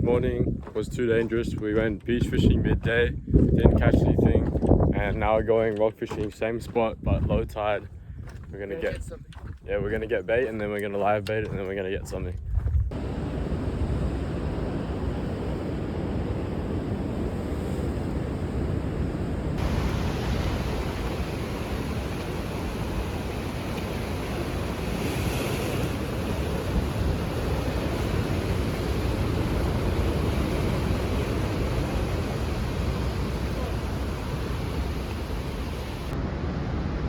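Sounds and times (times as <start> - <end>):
wind buffeting microphone: 0.0 - 36.2
ocean surf roaring: 12.9 - 37.0.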